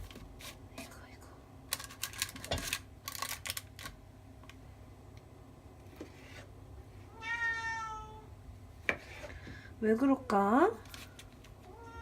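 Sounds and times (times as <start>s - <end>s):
cat meowing: 7.1s - 8.3s, 11.7s - 12.0s.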